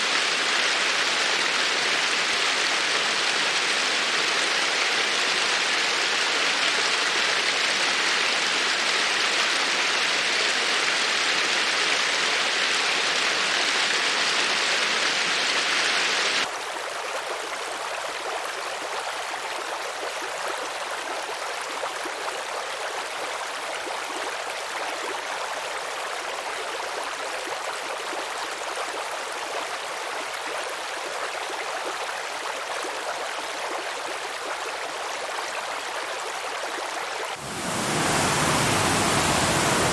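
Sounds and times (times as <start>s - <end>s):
quieter even water flow: 36.1s - 39.9s
water rushing: 37.4s - 39.9s.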